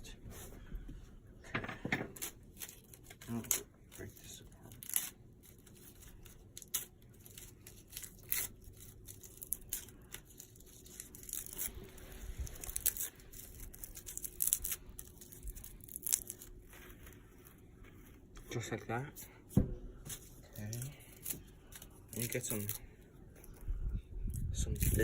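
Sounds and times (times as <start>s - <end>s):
pine cone snapping and crackling: 2.2s - 16.7s, 20.6s - 22.8s, 24.3s - 25.0s.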